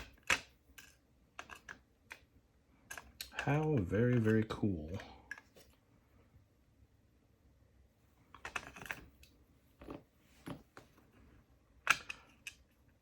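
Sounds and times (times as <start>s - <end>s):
small metal parts clicking and tapping: 0.0s - 5.7s, 8.3s - 10.0s, 11.8s - 13.0s.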